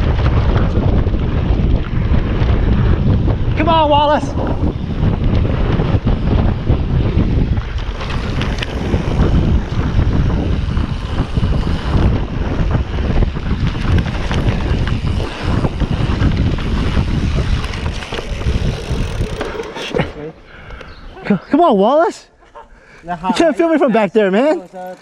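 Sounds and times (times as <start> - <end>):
wind buffeting microphone: 0.0 - 21.5
bike clattering over ground: 13.5 - 20.2.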